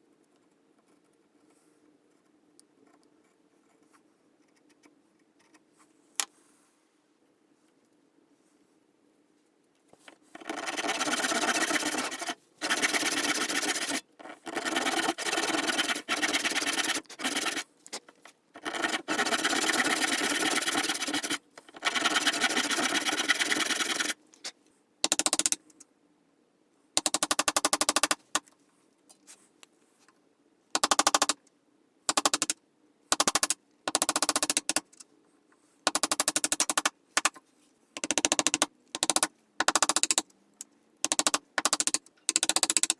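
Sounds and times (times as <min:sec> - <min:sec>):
hand saw cutting wood: 0:10.4 - 0:17.6, 0:18.6 - 0:24.2.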